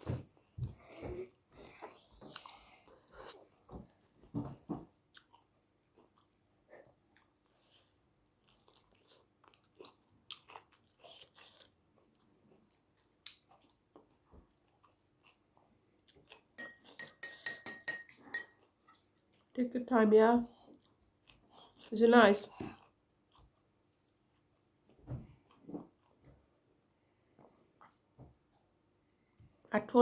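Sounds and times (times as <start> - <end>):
chewing and crunching food: 0.8 - 4.0, 4.8 - 17.4, 18.2 - 28.8
cutlery clinking against dish: 16.6 - 18.6.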